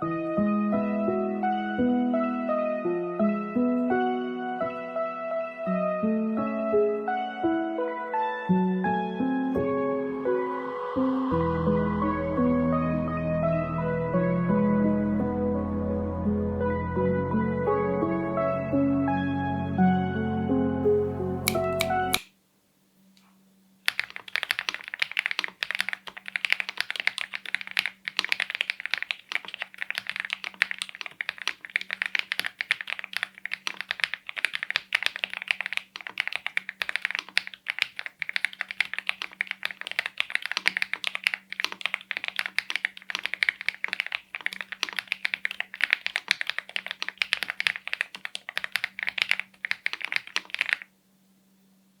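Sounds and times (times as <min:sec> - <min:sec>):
mechanical keyboard typing: 0:21.4 - 0:22.3, 0:23.9 - 0:50.9.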